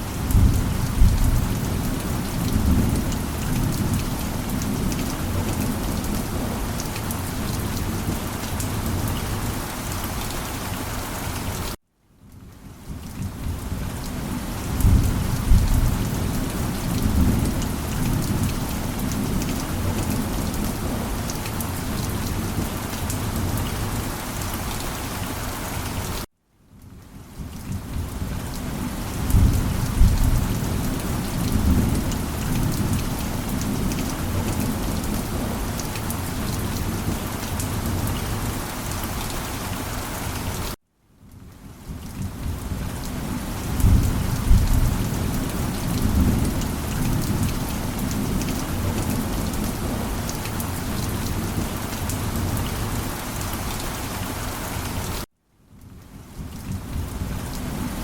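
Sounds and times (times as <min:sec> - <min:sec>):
heavy rain: 0:00.0 - 0:58.0
thunder rumbling: 0:00.1 - 0:06.6, 0:14.3 - 0:21.4, 0:29.1 - 0:35.9, 0:43.6 - 0:50.7.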